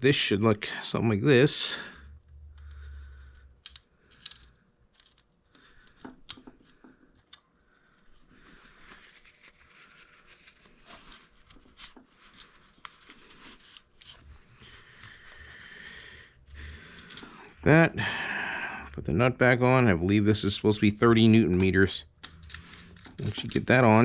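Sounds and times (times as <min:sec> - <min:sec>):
metal parts clicking and tapping: 0:03.3 - 0:07.4, 0:21.6 - 0:24.0
soft rustling: 0:07.8 - 0:15.4.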